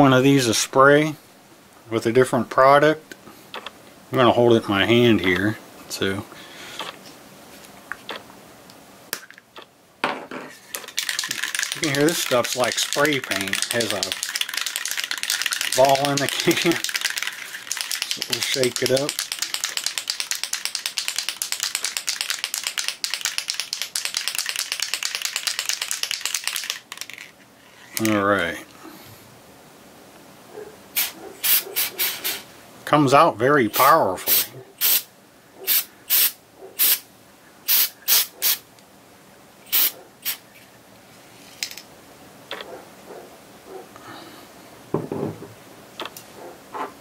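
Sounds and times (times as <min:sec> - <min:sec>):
aerosol can mixing ball rattling: 0:10.6 - 0:28.2.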